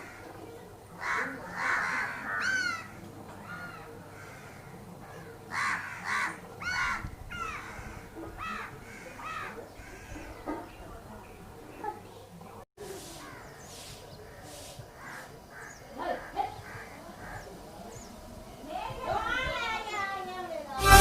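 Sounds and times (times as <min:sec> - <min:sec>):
crows cawing: 0:01.0 - 0:10.4, 0:14.3 - 0:17.5.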